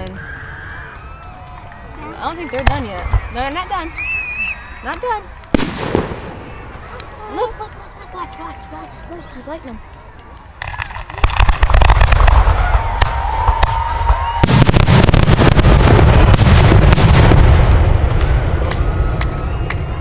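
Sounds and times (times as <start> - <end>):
fireworks bursting and crackling: 0.0 - 20.0
fireworks whistle: 2.6 - 7.1, 10.4 - 17.4, 18.6 - 20.0.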